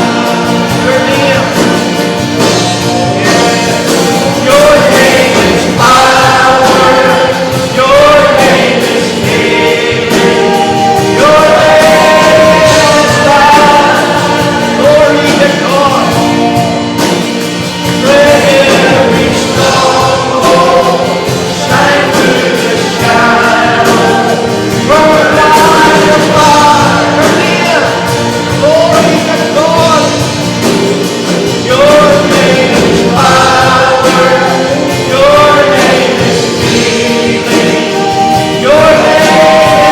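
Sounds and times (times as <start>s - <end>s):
worship song with band: 0.0s - 39.9s.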